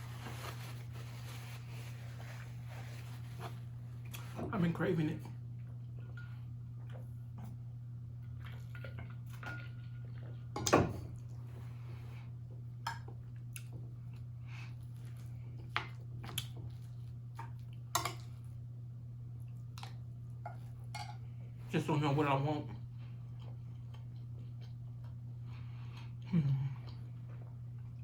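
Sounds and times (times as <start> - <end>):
steady low hum: 0.0 - 28.0
chewing: 23.0 - 26.2.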